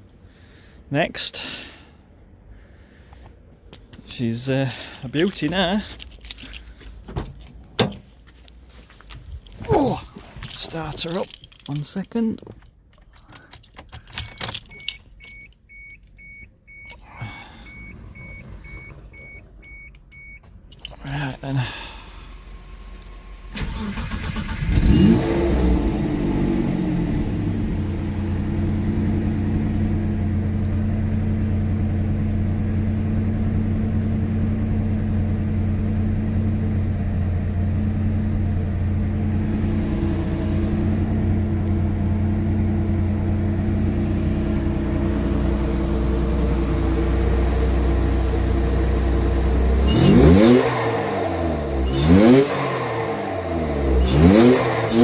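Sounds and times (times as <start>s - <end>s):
car engine starting and idling: 0.0s - 55.0s
car engine revving: 17.3s - 19.8s, 21.2s - 31.9s, 35.4s - 55.0s.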